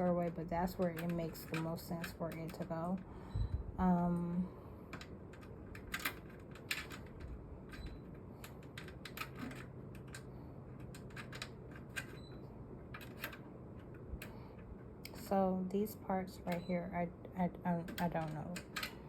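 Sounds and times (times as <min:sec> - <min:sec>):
light clicks of plastic and metal parts: 0:00.0 - 0:03.1, 0:17.8 - 0:19.0.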